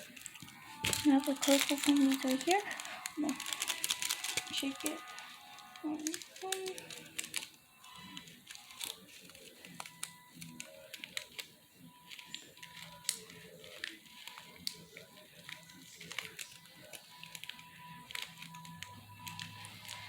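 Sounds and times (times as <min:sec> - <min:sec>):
foam beads rattling in container: 0:00.0 - 0:09.0.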